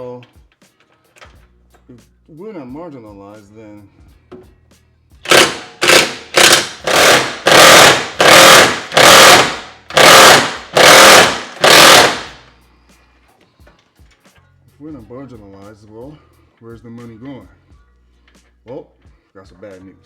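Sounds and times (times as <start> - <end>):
impact wrench bursts: 5.2 - 12.5.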